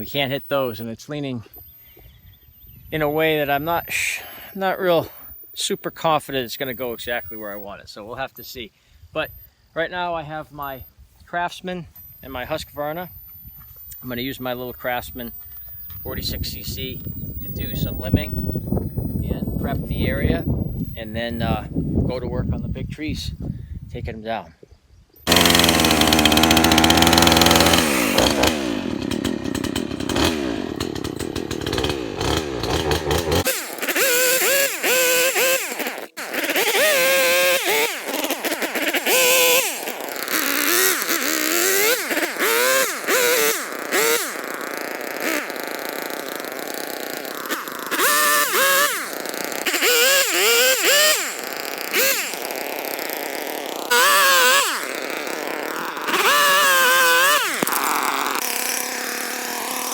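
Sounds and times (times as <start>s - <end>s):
chainsaw revving: 0.0s - 0.8s, 3.0s - 7.6s, 14.5s - 21.4s, 25.2s - 59.9s.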